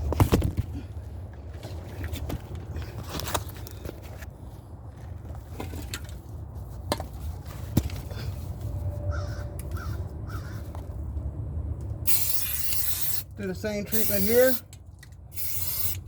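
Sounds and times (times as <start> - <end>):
crow cawing: 9.1 - 10.7
aerosol can spraying: 12.1 - 13.3, 13.9 - 14.6, 15.3 - 16.0.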